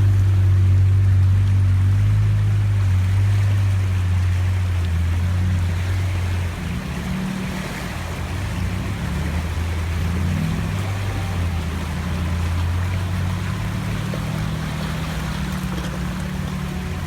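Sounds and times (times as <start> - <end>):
moving water washing: 0.0 - 17.0
vehicle engine droning: 0.0 - 17.0.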